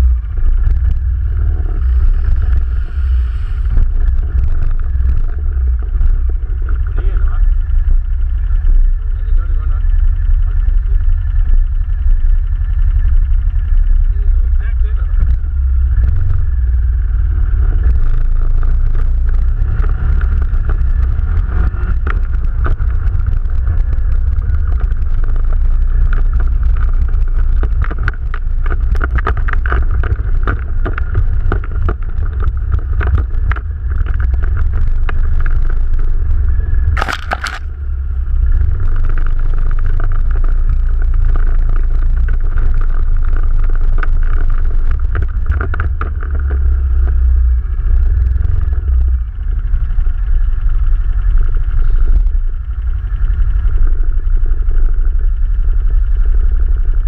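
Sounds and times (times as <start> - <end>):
atv engine running: 0.0 - 57.0
crunching and clattering over rough ground: 17.7 - 49.2.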